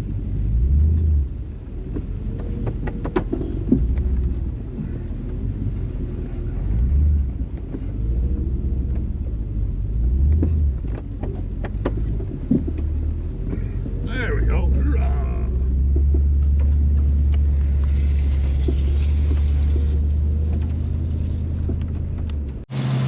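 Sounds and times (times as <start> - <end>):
truck engine rumbling: 0.0 - 23.0.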